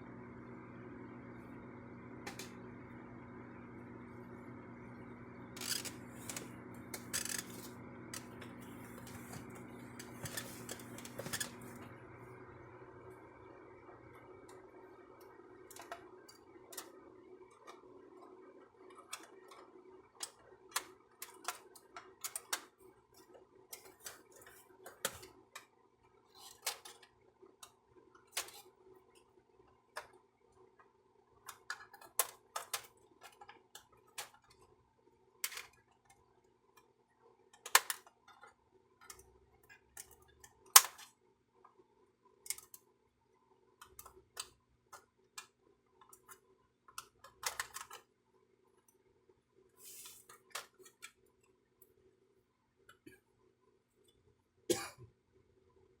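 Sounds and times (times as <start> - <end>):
plastic parts clicking and tapping: 19.0 - 22.8, 31.4 - 34.6, 37.6 - 39.2, 42.5 - 42.8, 43.8 - 48.1.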